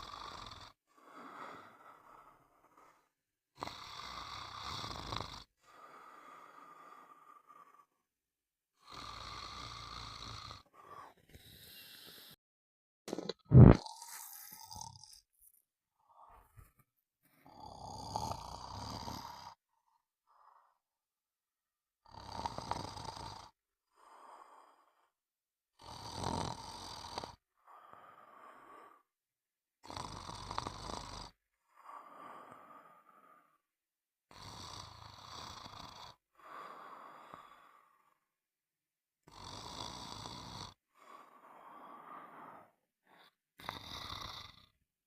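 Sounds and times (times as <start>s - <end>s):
person snoring: 0.0s - 8.0s, 8.8s - 12.4s, 13.1s - 15.3s, 17.4s - 19.6s, 22.0s - 25.0s, 25.8s - 29.0s, 29.8s - 33.6s, 34.3s - 38.2s, 39.3s - 44.8s.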